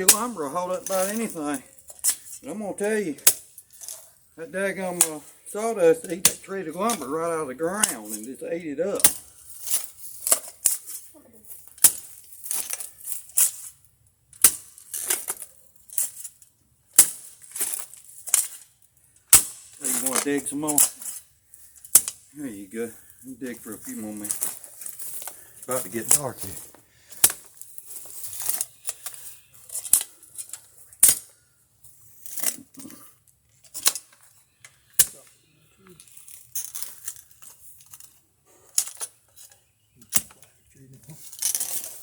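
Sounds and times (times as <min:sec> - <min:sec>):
sharp strikes of digging tool: 0:00.0 - 0:01.2
metal tool striking soil: 0:00.0 - 0:04.0, 0:07.7 - 0:11.0, 0:14.4 - 0:16.3, 0:19.3 - 0:22.3, 0:34.8 - 0:35.4
gritty scraping in soil: 0:00.0 - 0:42.0.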